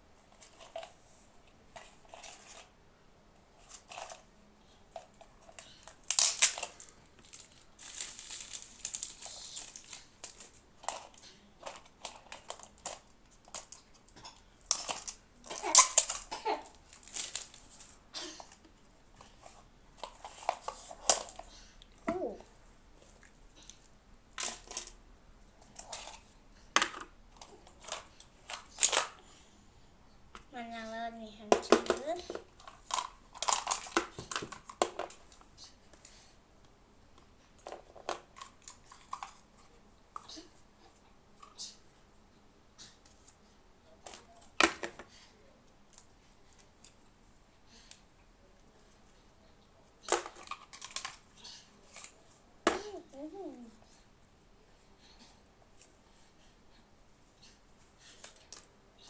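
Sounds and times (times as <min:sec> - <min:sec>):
packaging crinkling and tearing: 0:06.0 - 0:10.6, 0:14.7 - 0:18.0.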